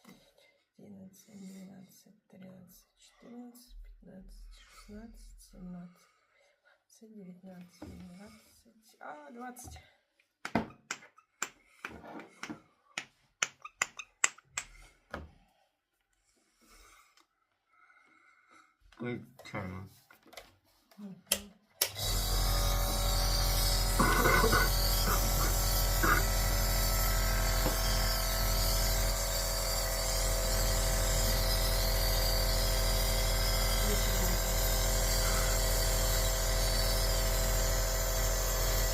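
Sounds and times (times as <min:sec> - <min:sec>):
compressor nebulizer humming: 0:21.8 - 0:38.9.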